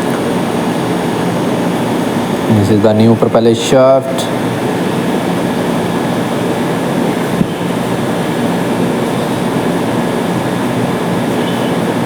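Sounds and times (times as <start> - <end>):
mechanical hum and rush: 0.0 - 12.0.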